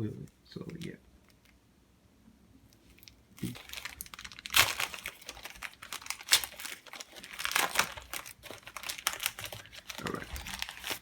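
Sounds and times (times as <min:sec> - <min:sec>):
paper crumpling and crinkling: 0:02.9 - 0:11.0.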